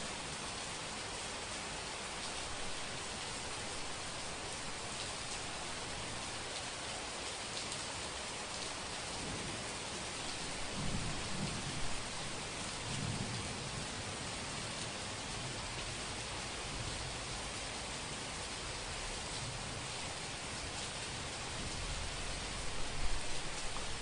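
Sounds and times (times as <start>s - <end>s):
heavy rain hissing: 8.1s - 24.0s.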